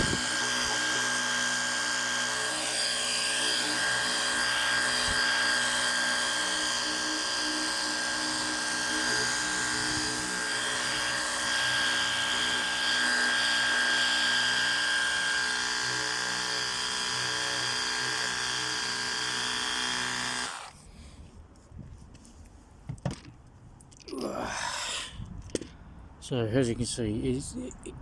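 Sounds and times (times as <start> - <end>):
pressure washer pump motor whining: 0.0 - 20.7.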